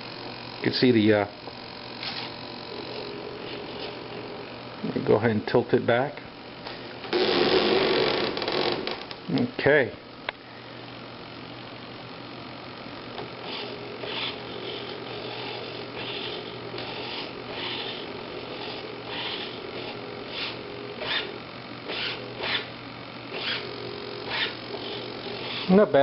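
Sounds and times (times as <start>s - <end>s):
steady low hum: 0.0s - 26.0s
servo whirring buzz: 1.5s - 4.4s, 7.0s - 9.2s, 13.1s - 26.0s.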